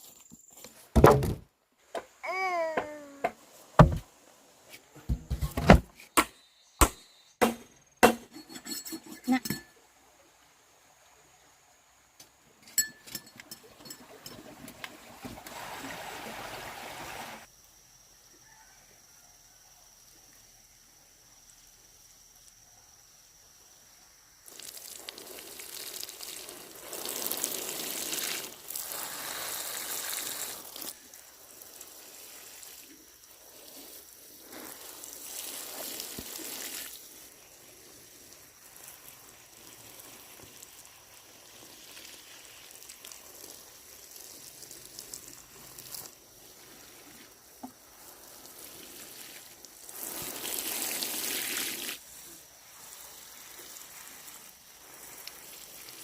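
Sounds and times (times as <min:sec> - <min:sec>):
water pouring and splashing: 0:02.2 - 0:05.8, 0:12.3 - 0:17.5, 0:24.4 - 0:56.0
water trickling: 0:12.0 - 0:17.5, 0:24.4 - 0:56.0.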